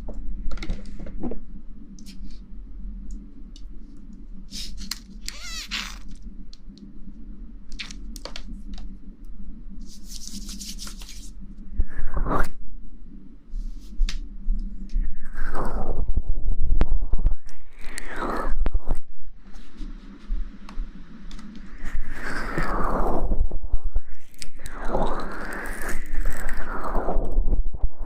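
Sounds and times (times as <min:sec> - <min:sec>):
steady low hum: 0:00.0 - 0:28.0
rustling and scratching: 0:09.8 - 0:11.4.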